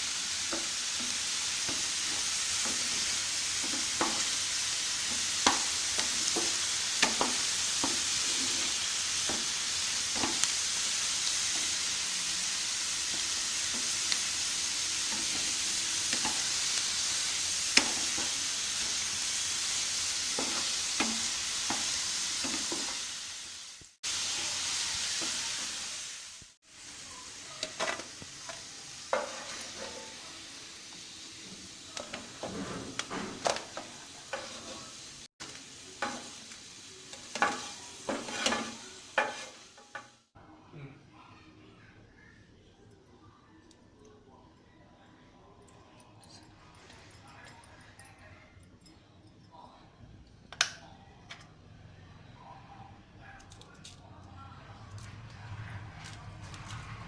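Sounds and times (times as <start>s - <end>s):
fries sizzling in hot oil: 0.0s - 40.4s.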